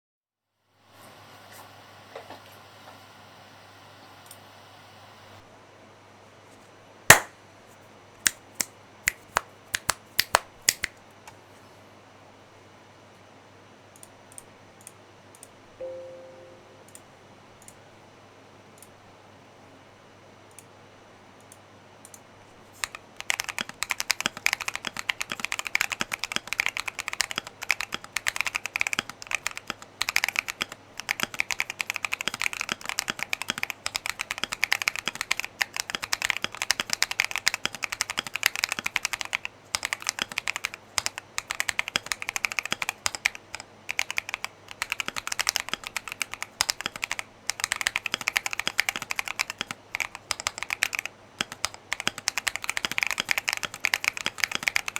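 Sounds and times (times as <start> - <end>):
mechanical keyboard typing: 8.3 - 10.9, 22.8 - 54.9.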